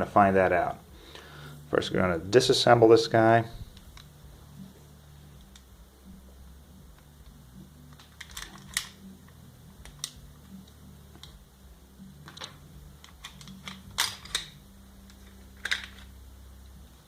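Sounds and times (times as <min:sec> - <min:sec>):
metal pistol parts clicking: 0:07.9 - 0:09.0, 0:12.3 - 0:16.1.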